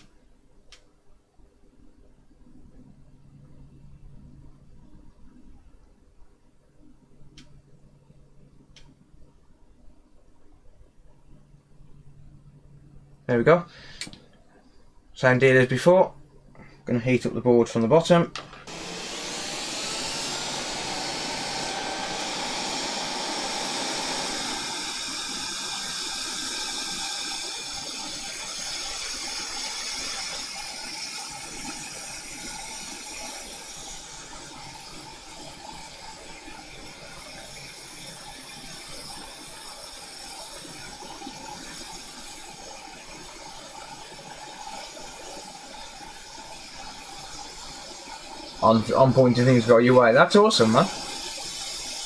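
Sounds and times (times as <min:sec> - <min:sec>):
hot air blower hissing: 0:13.7 - 0:14.2, 0:18.4 - 0:52.0.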